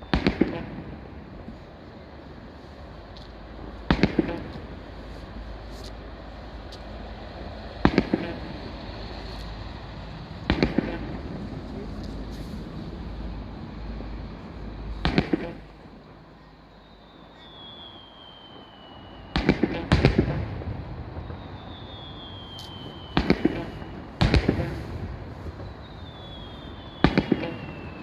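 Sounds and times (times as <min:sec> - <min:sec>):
fireworks bursting with bangs: 0:00.0 - 0:01.5, 0:03.8 - 0:05.7, 0:07.7 - 0:09.3, 0:10.0 - 0:12.4, 0:15.0 - 0:15.8, 0:17.5 - 0:28.0
falling firework whistle: 0:16.7 - 0:28.0.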